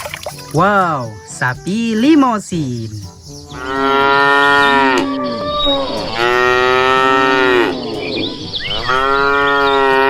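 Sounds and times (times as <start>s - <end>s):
cow mooing: 3.6s - 10.0s.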